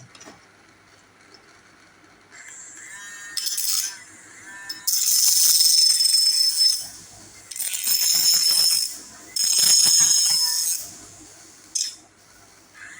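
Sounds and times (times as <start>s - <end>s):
mini grinder whining: 2.4s - 11.0s.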